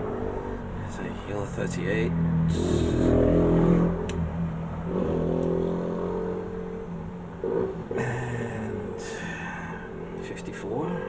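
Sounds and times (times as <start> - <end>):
engine-like drone: 0.0 - 11.0.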